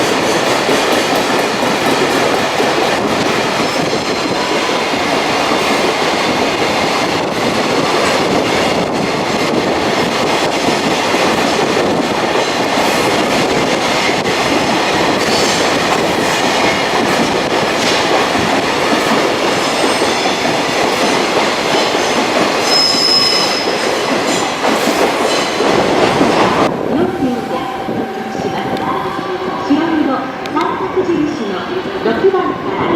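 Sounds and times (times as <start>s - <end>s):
train wheels rumbling on rails: 0.0s - 32.9s
high wheel squeal: 22.7s - 23.7s.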